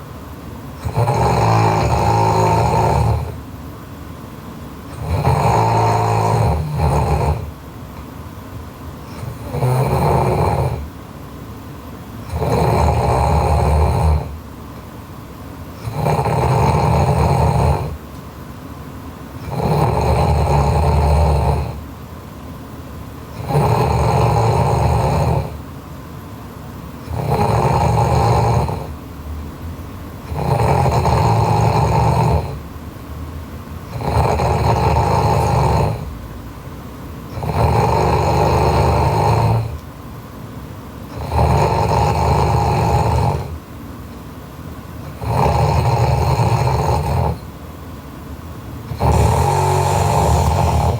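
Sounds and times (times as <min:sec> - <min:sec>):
woman snoring loudly: 0:00.8 - 0:03.4, 0:04.9 - 0:07.6, 0:09.1 - 0:10.9, 0:12.3 - 0:14.4, 0:15.8 - 0:18.0, 0:19.4 - 0:21.9, 0:23.4 - 0:25.6, 0:27.0 - 0:29.0, 0:30.2 - 0:32.6, 0:33.8 - 0:36.2, 0:37.3 - 0:39.8, 0:41.1 - 0:43.6, 0:45.0 - 0:47.5, 0:48.9 - 0:50.9.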